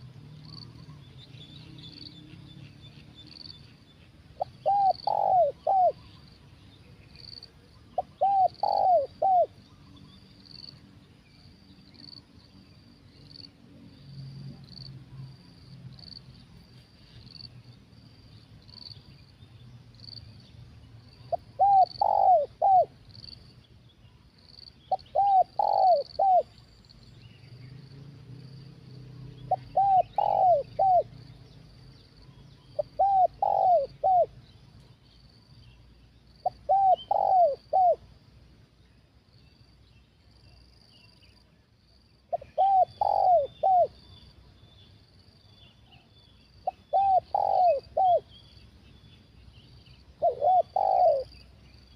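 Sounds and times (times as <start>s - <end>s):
insects chirping: 0.0s - 51.9s
dove cooing: 4.4s - 6.0s, 8.0s - 9.6s, 21.3s - 23.0s, 24.9s - 26.5s, 29.4s - 31.2s, 32.8s - 34.4s, 36.4s - 38.0s, 42.3s - 44.0s, 46.6s - 48.4s, 50.2s - 51.4s.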